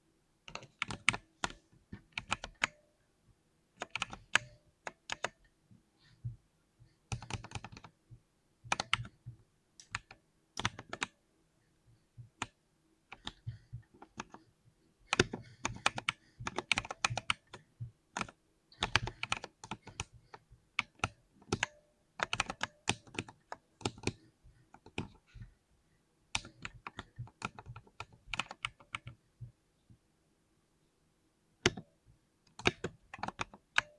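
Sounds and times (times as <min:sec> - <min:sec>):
mechanical keyboard typing: 0:00.5 - 0:02.8, 0:03.8 - 0:05.4, 0:07.1 - 0:07.9, 0:08.7 - 0:09.2, 0:09.8 - 0:11.2, 0:12.4 - 0:14.4, 0:15.1 - 0:17.6, 0:18.2 - 0:25.2, 0:26.3 - 0:29.2, 0:31.6 - 0:31.9, 0:32.5 - 0:33.9.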